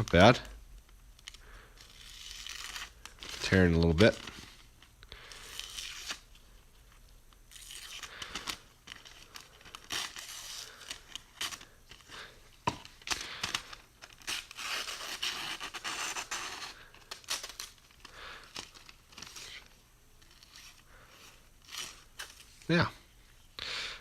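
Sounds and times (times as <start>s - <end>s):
paper tearing: 1.8s - 6.3s, 7.5s - 12.3s, 13.2s - 22.5s.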